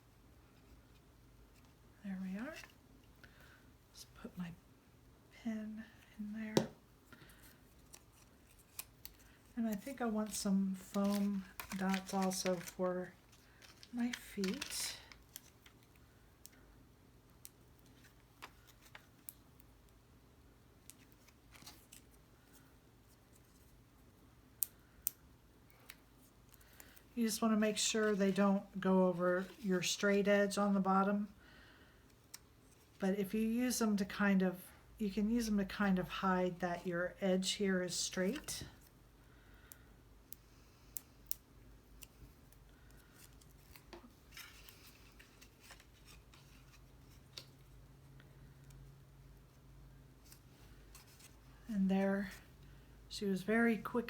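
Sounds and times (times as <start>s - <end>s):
soft rustle of cardstock: 5.8s - 16.7s, 17.4s - 20.0s, 20.8s - 24.2s, 25.7s - 30.8s, 40.3s - 54.0s
paper rustling: 7.3s - 15.9s, 43.0s - 47.8s.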